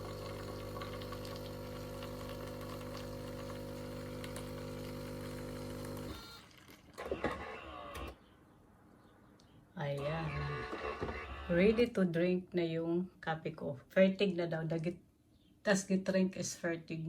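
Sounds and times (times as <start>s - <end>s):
coffee machine pump humming: 0.0s - 6.8s.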